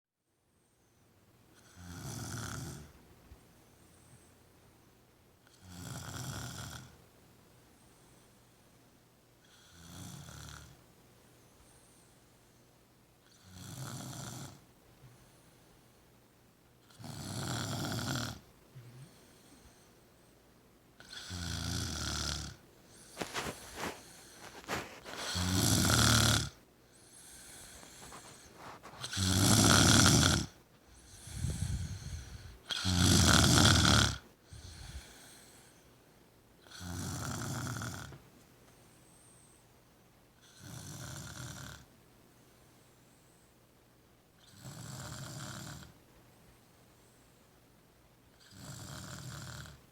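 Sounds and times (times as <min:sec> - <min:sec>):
person snoring deeply: 0:23.2 - 0:26.6, 0:28.8 - 0:35.2.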